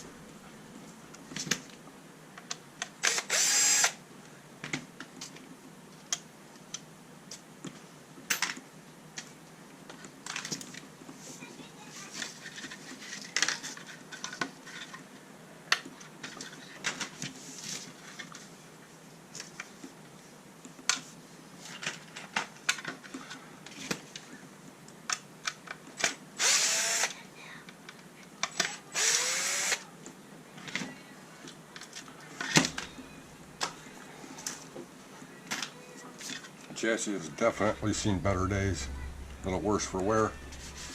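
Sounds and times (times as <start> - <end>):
cordless screwdriver spinning: 3.1 - 3.9.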